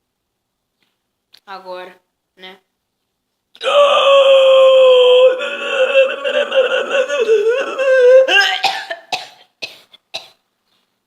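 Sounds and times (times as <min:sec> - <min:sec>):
person's drawn-out vocal noise: 0:03.6 - 0:08.7
short small coughs: 0:08.4 - 0:10.4.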